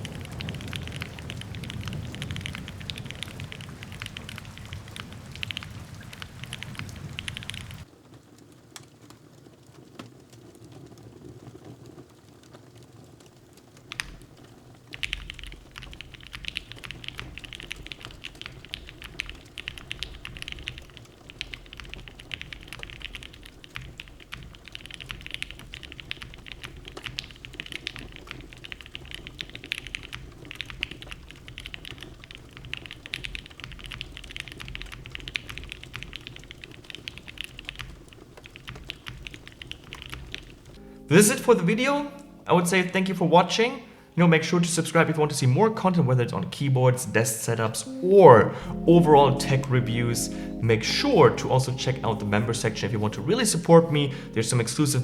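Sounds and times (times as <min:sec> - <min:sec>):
mechanical keyboard typing: 0:00.0 - 0:07.9, 0:13.9 - 0:41.4.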